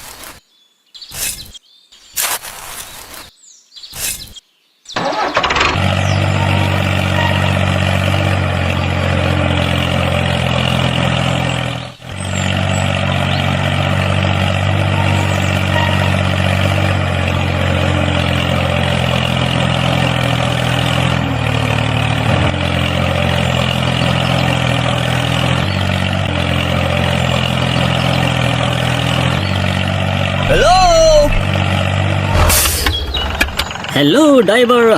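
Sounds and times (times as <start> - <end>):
heavy truck engine idling: 28.4 - 34.2.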